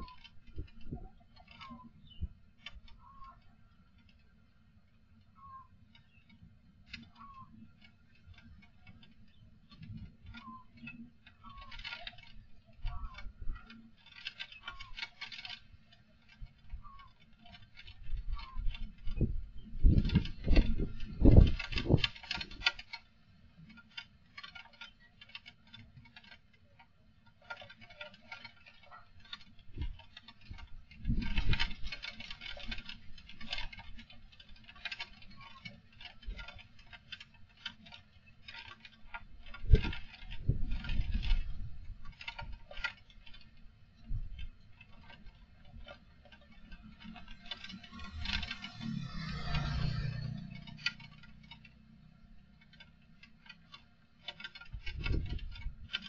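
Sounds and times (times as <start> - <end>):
rattling and clicking: 0.0 - 56.0
wind gusting on microphone: 18.0 - 22.6, 29.7 - 31.9, 39.6 - 42.5, 54.7 - 55.9.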